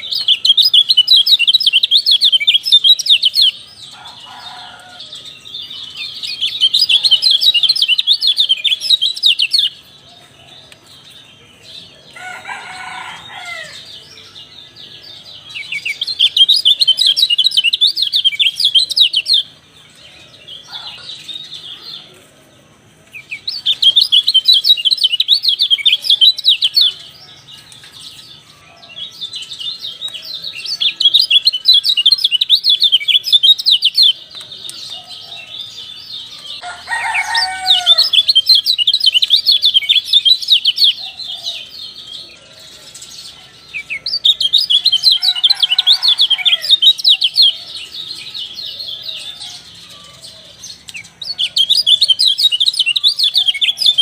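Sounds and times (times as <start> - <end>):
bird twittering: 23.2 - 27.2, 29.5 - 42.1, 43.7 - 49.6.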